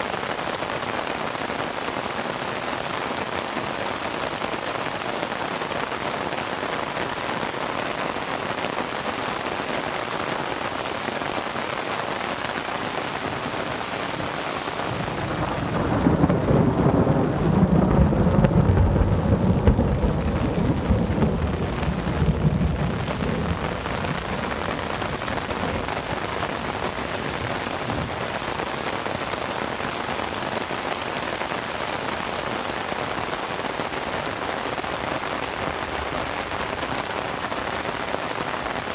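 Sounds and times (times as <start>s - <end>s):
heavy rain falling: 0.0s - 38.9s
thunder rumbling: 14.3s - 29.4s.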